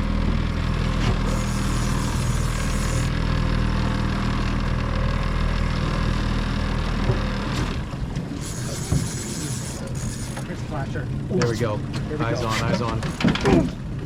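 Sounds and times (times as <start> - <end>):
boat engine humming: 0.0 - 14.0.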